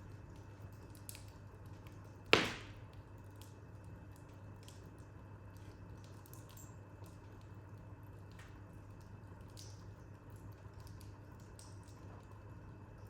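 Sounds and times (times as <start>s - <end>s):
wood fire crackling: 0.0s - 12.9s
burning wood popping: 2.3s - 3.0s.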